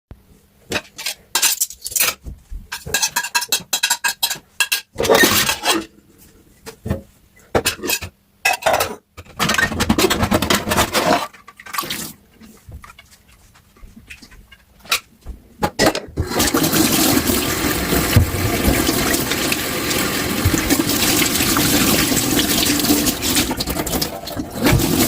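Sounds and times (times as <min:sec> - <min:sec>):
dishes and cutlery clattering: 0:00.7 - 0:05.9, 0:07.6 - 0:11.8, 0:15.6 - 0:16.2
tap water running: 0:16.2 - 0:25.0.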